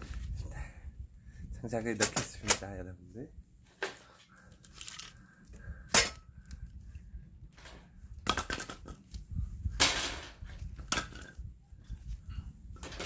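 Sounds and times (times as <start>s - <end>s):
firewood clattering: 7.5s - 9.2s, 12.7s - 13.0s.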